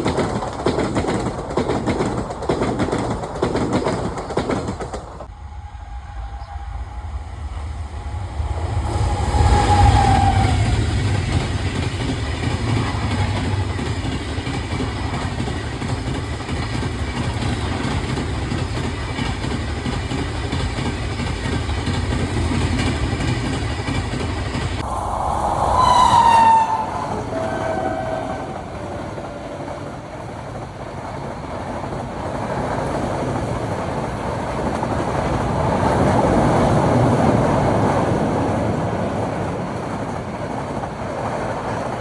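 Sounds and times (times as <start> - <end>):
wheels clattering over rail joints: 0.0 - 5.3
train wheels rumbling: 0.0 - 42.0
long held tone: 5.3 - 10.8, 24.8 - 29.2.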